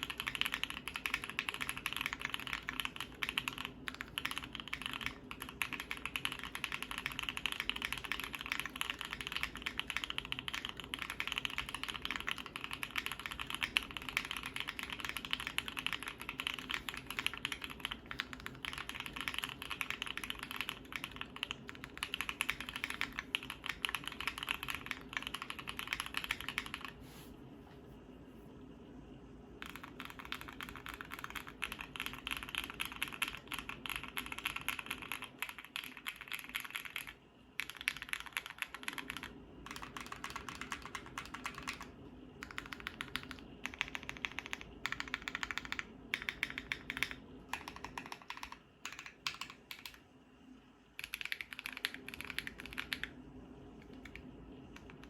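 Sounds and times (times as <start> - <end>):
rapid mechanical keyboard typing: 0.0 - 27.0, 29.6 - 50.0, 51.0 - 53.2, 53.8 - 55.0.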